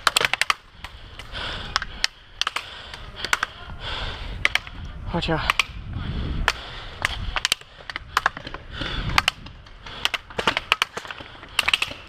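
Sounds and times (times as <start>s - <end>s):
airsoft guns firing: 0.0s - 1.0s, 7.0s - 12.0s.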